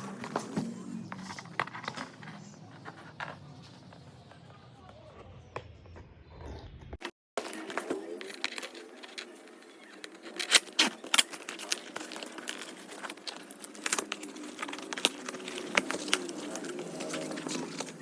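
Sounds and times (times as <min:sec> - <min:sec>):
packaging clicking and crinkling: 0:07.4 - 0:18.0.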